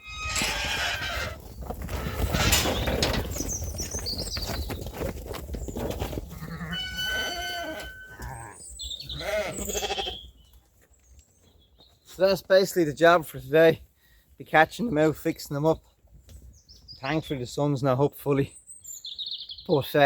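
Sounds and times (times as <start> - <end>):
knocking and shuffling: 0.1 - 6.4
sheep bleating: 6.3 - 10.2.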